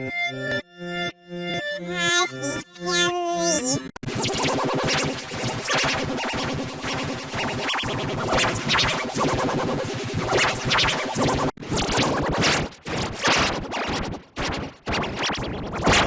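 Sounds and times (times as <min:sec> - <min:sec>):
heavily processed electronic music: 0:01.7 - 0:11.5
record scratching sounds: 0:04.0 - 0:12.6, 0:13.2 - 0:16.0.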